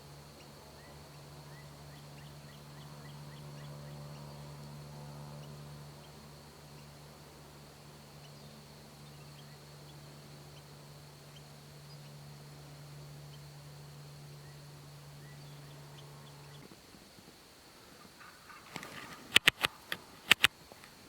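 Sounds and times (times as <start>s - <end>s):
steady low hum: 0.0s - 21.0s
faint bird chirps: 0.1s - 16.8s.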